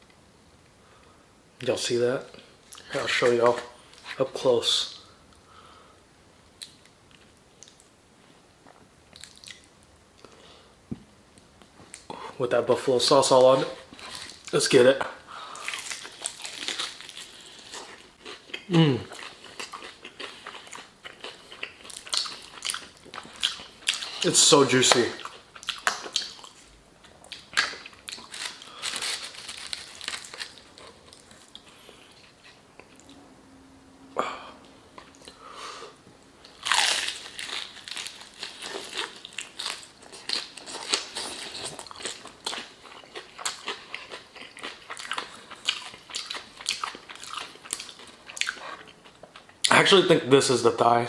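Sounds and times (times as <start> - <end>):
crunching fried chicken: 15.5 - 26.6, 27.3 - 31.8, 36.5 - 49.0.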